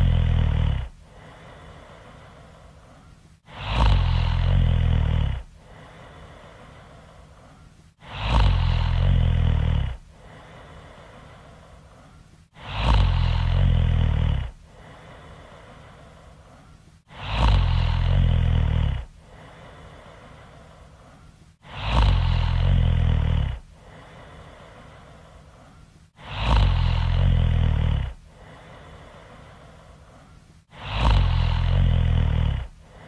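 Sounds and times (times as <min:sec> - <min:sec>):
loud rattling snoring: 0:00.0 - 0:01.6, 0:03.4 - 0:06.2, 0:08.0 - 0:10.8, 0:12.5 - 0:15.6, 0:17.1 - 0:19.9, 0:21.6 - 0:24.6, 0:26.2 - 0:29.2, 0:30.7 - 0:33.0
quiet breath: 0:00.0 - 0:33.0.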